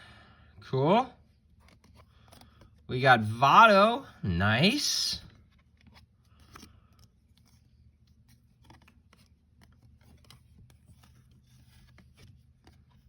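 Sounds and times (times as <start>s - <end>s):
cards clicking and scraping: 1.5s - 2.9s, 5.4s - 13.0s.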